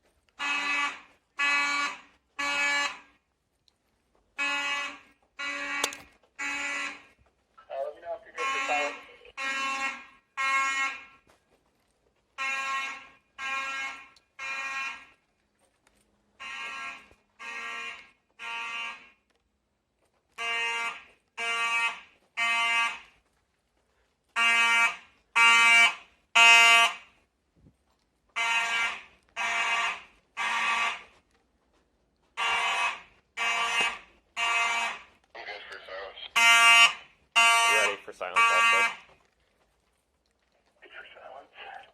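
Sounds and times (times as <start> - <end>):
fire alarm horns blaring: 0.4 - 3.0, 4.4 - 7.1, 7.7 - 11.0, 12.4 - 15.0, 16.4 - 19.1, 20.4 - 23.0, 24.4 - 27.0, 28.4 - 31.2, 32.4 - 35.0, 36.3 - 39.1.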